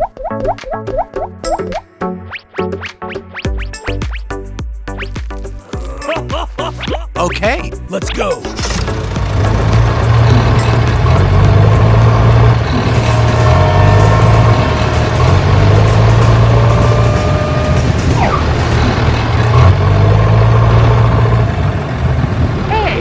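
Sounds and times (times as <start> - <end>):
motor humming: 8.5 - 22.7.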